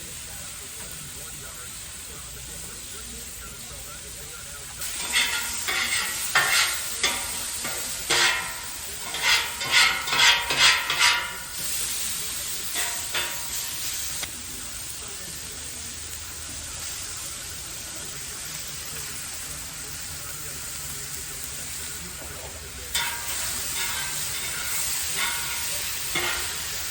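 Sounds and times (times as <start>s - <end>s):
food sizzling in a frying pan: 0.0s - 26.9s
utensil scraping a pan: 4.8s - 14.2s, 22.9s - 26.9s.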